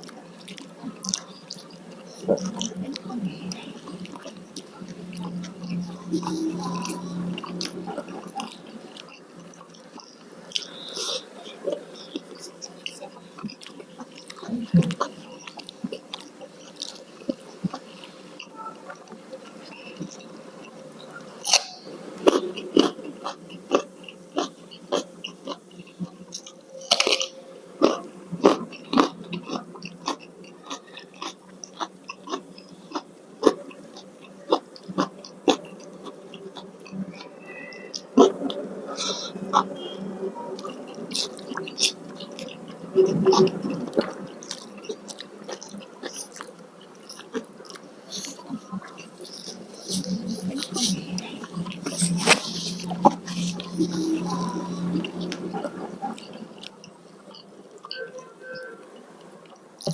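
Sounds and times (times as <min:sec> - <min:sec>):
chewing and biting food: 0:00.0 - 0:18.1, 0:21.4 - 0:25.6, 0:26.3 - 0:37.3, 0:40.6 - 0:58.0
wet mouth clicks: 0:40.6 - 0:58.0.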